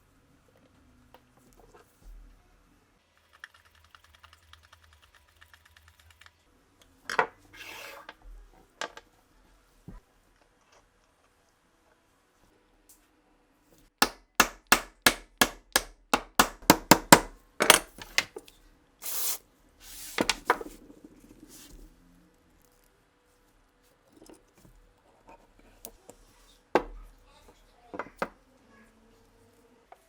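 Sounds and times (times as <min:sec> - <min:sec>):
brief hisses: 0:19.0 - 0:20.2.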